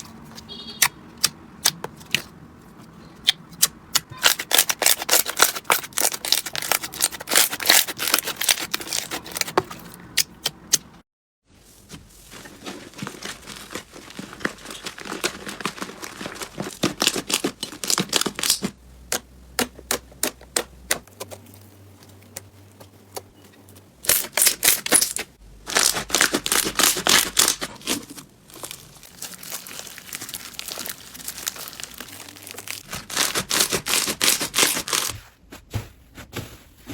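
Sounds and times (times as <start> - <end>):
slime crackling and popping: 24.1 - 35.1.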